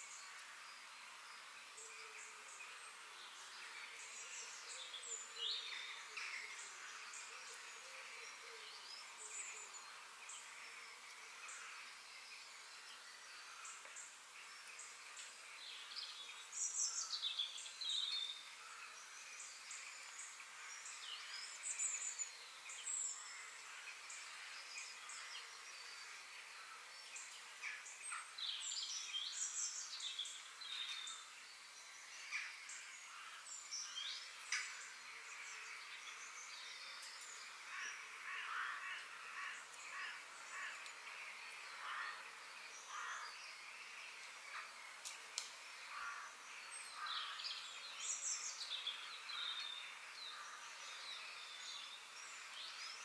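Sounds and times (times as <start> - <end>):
faint steady hiss: 0.0 - 53.0
songbirds singing and chirping: 0.0 - 53.0.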